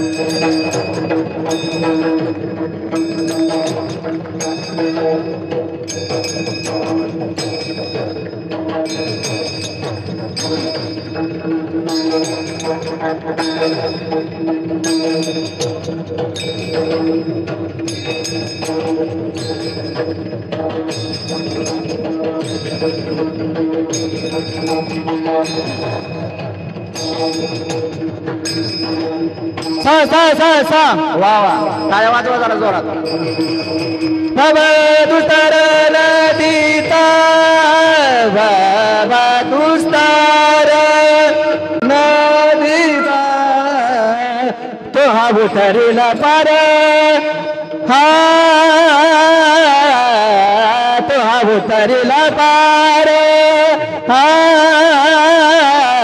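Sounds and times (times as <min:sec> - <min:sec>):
hand cymbals clashing: 0:00.0 - 0:37.5
steady drum beat: 0:00.0 - 0:40.4.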